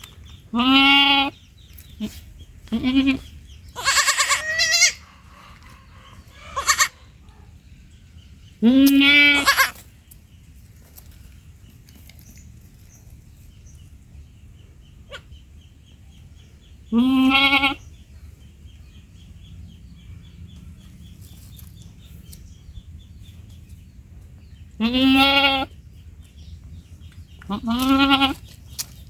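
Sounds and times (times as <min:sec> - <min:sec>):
baby goat bleating: 0:00.5 - 0:01.4, 0:02.0 - 0:05.0, 0:06.4 - 0:06.9, 0:08.6 - 0:09.8, 0:16.9 - 0:17.8, 0:24.8 - 0:25.8, 0:27.4 - 0:28.5.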